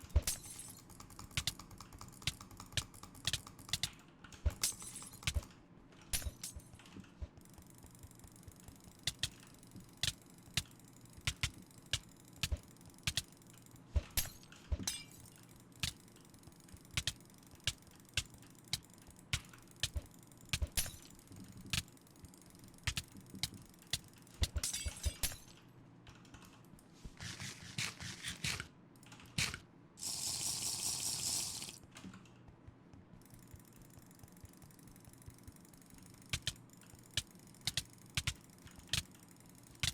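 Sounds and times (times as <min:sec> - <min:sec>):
computer mouse buttons clicking: 0:06.8 - 0:13.3, 0:15.8 - 0:20.8, 0:35.2 - 0:39.9.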